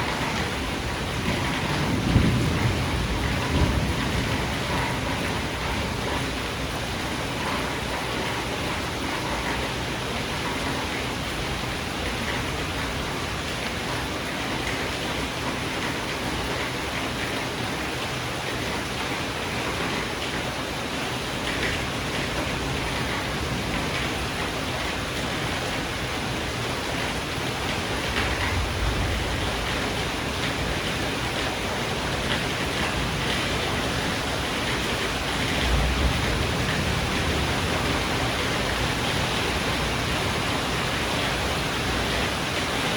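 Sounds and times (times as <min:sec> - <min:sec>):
thunder rumbling: 0:00.0 - 0:06.6, 0:21.8 - 0:42.9
steady rain: 0:00.0 - 0:42.9.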